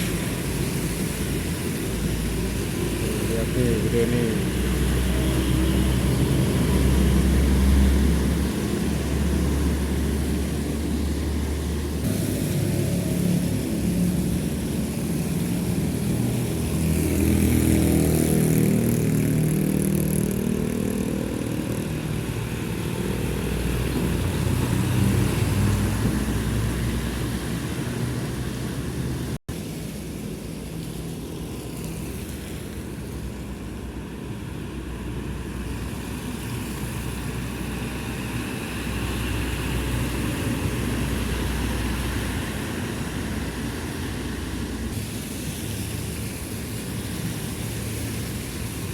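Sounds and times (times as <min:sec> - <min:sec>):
tyre hiss on wet road: 0:00.0 - 0:19.5, 0:21.9 - 0:48.9
diesel truck engine drone: 0:00.0 - 0:30.4
traffic noise: 0:00.0 - 0:48.9.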